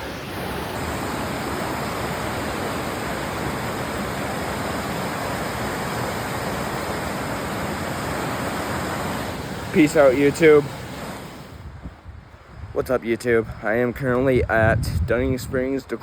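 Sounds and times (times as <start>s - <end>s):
waterfall rushing: 0.0s - 11.6s.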